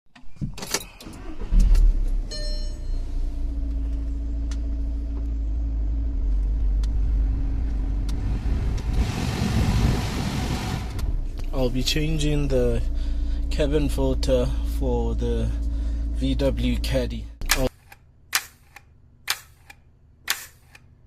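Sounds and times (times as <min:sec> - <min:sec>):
ignition clicks: 0:00.2 - 0:02.5, 0:03.5 - 0:05.4, 0:06.3 - 0:07.0, 0:07.6 - 0:08.9, 0:17.4 - 0:20.8
car engine starting and idling: 0:00.5 - 0:17.7
rush of air: 0:07.4 - 0:11.2.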